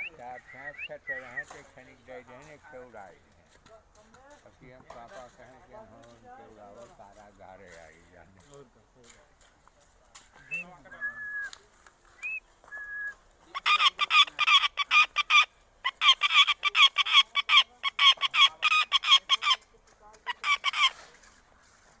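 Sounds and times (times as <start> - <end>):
parrot calling: 13.0 - 19.6.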